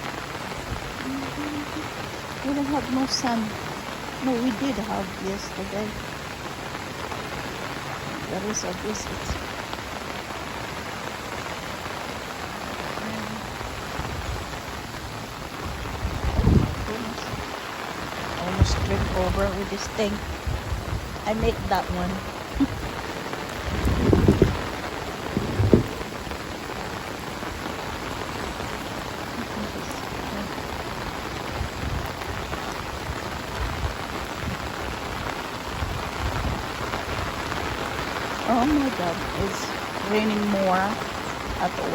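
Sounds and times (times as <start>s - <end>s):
rain falling: 0.0s - 41.9s
low thump: 25.3s - 26.1s.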